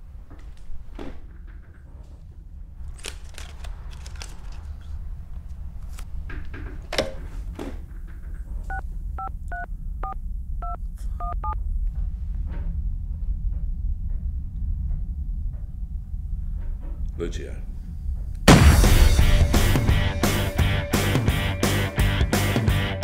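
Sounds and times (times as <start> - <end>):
steady low rumble: 0.0 - 23.0
clicks and knocks: 0.3 - 8.8
phone keypad beeps: 8.7 - 11.6.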